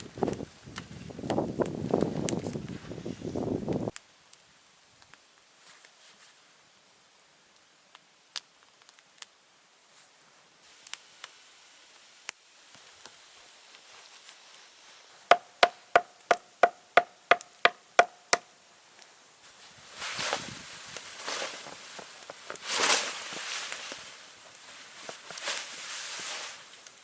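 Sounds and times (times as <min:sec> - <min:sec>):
hand tool striking wood: 0:15.3 - 0:18.5
rustling crunch: 0:19.4 - 0:27.0.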